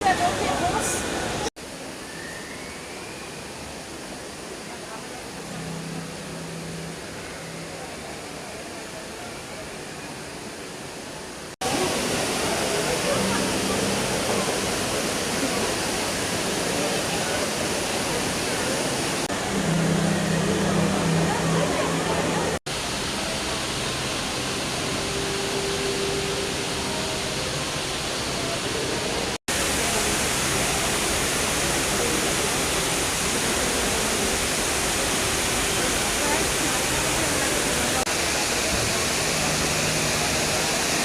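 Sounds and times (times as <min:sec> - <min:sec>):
indoor waterfall rushing: 0:00.0 - 0:41.0.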